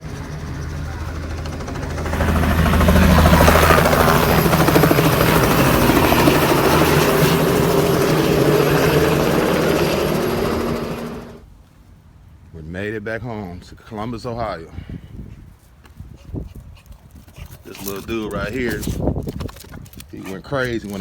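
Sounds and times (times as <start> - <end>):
helicopter rotor chopping: 0.0 - 11.4.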